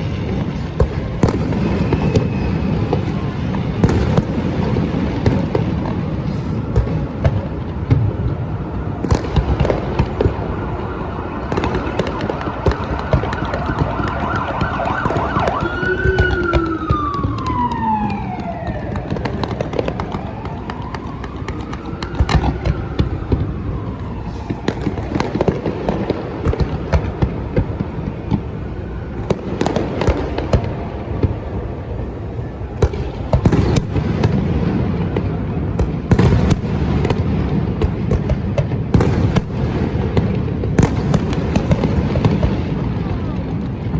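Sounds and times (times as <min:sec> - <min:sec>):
siren wailing: 0:00.0 - 0:26.3
fireworks bangs: 0:00.0 - 0:31.9, 0:32.8 - 0:43.9.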